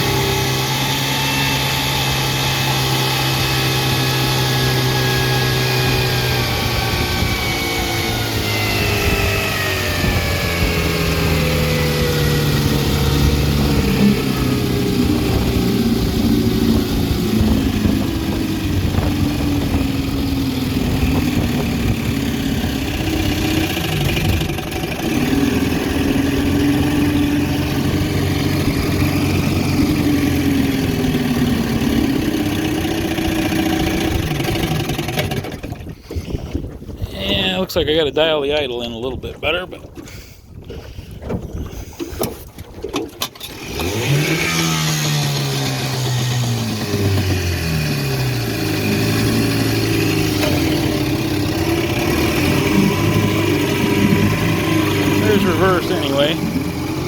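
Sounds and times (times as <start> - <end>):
outboard motor running: 0.0 - 57.0.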